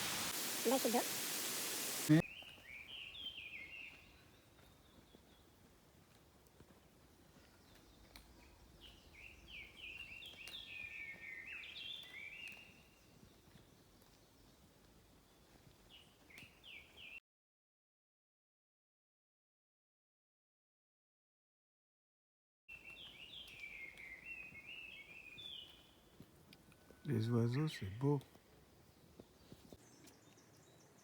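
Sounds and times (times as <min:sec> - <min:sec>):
soft outdoor hiss: 0:00.0 - 0:17.2, 0:22.7 - 0:31.0
bird chirping: 0:00.6 - 0:05.6, 0:07.2 - 0:14.6, 0:15.2 - 0:17.2, 0:22.7 - 0:31.0.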